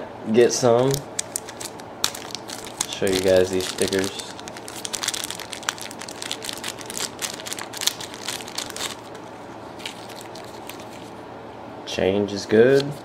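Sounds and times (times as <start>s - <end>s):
packaging crinkling: 0.8s - 11.1s.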